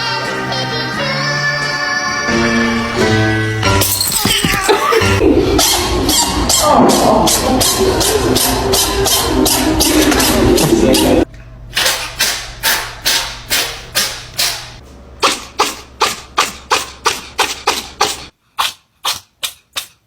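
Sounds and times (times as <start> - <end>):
cat sneezing: 15.2 - 20.0.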